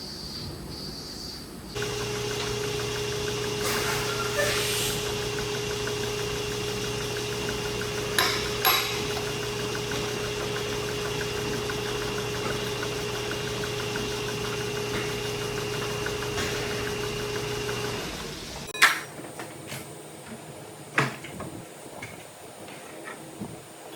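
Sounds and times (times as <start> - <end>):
steady machine hum: 1.7 - 18.8
faint regular ticking: 1.8 - 3.7, 5.0 - 18.1.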